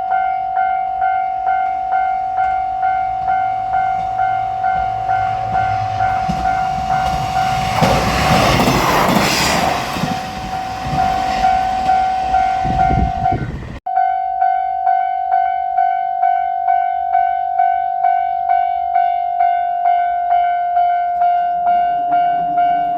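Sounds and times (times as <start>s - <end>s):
diesel railcar passing: 0.0s - 13.9s, 19.8s - 22.9s
railroad crossing bell ringing: 0.0s - 22.9s.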